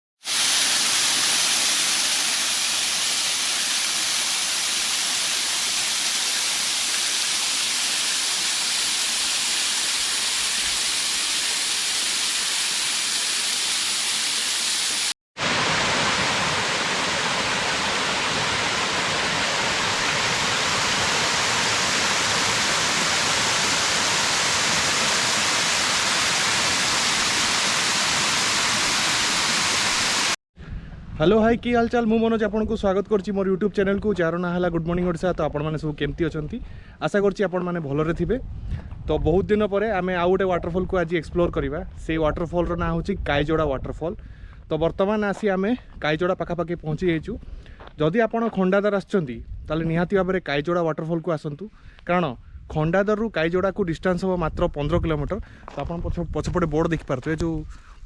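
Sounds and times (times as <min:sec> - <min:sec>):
waterfall rushing: 0:00.3 - 0:30.4.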